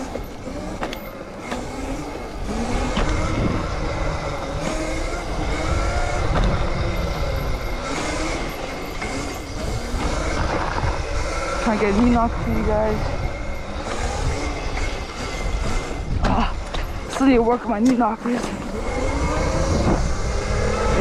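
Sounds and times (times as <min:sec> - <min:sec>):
electric dirt bike motor whining: 0:00.0 - 0:21.0
wind rumble on microphone: 0:00.0 - 0:21.0.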